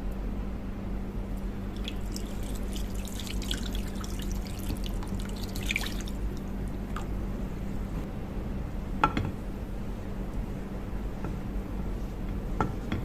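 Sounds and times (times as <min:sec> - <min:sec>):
steady low hum: 0:00.0 - 0:13.0
water dripping: 0:01.7 - 0:07.1.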